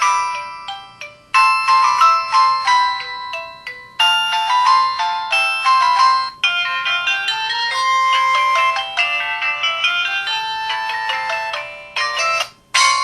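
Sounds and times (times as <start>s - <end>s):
polyphonic ringtone melodies: 0.0s - 13.0s.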